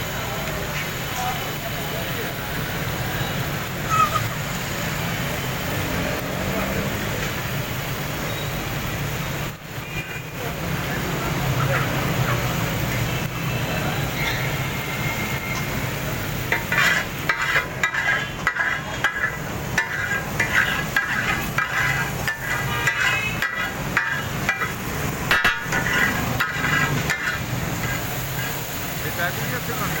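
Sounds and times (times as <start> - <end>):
metal spatulas clanging on griddle: 16.4 - 28.7.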